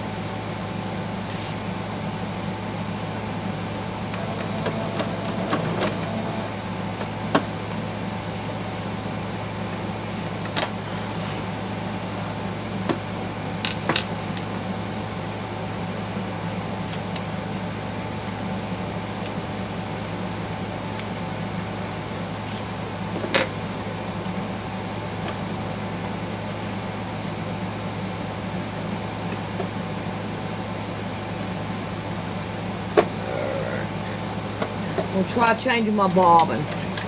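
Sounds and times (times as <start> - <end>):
electric hum: 2.2 - 8.4, 32.2 - 37.0.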